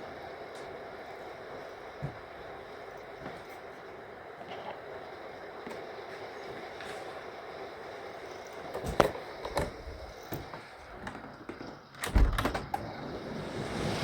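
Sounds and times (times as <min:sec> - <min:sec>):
thunder cracks and rumble: 0:12.1 - 0:14.0.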